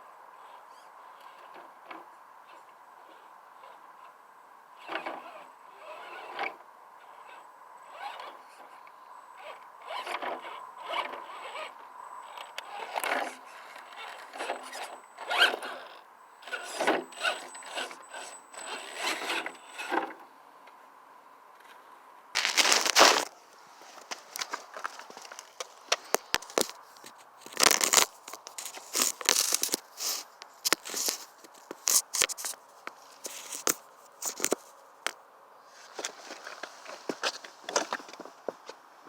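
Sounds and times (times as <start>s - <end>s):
toy car motor whining: 4.8s - 8.7s, 9.4s - 20.1s, 24.0s - 32.6s
faint steady tone: 6.8s - 9.8s, 10.5s - 19.8s.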